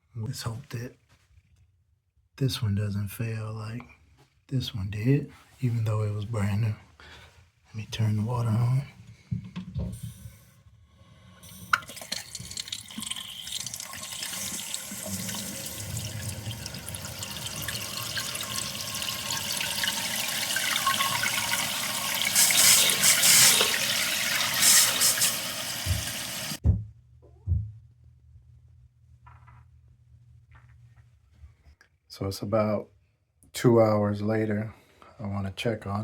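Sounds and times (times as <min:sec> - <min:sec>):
toilet tank refilling: 0:11.0 - 0:26.6.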